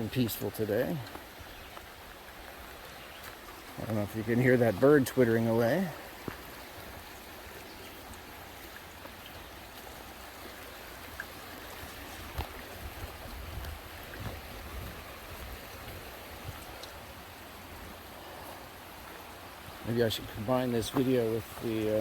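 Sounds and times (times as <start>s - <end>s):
river water rushing: 0.0s - 22.0s.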